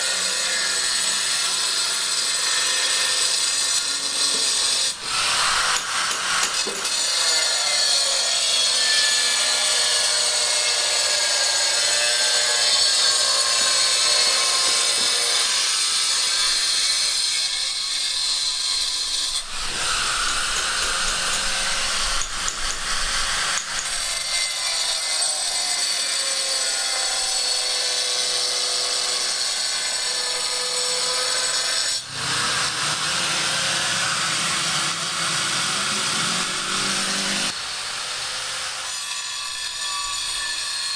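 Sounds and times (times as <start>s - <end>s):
power saw whining: 0.0s - 27.3s.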